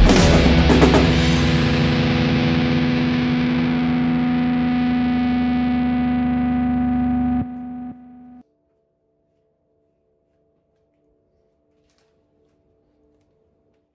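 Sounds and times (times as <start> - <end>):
distorted electric guitar chord: 0.0 - 8.4.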